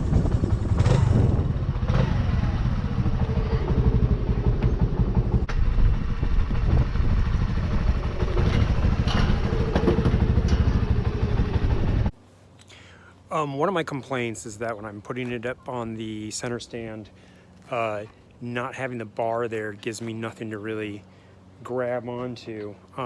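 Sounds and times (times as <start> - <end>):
small engine running steadily: 0.0 - 12.1, 20.9 - 21.6.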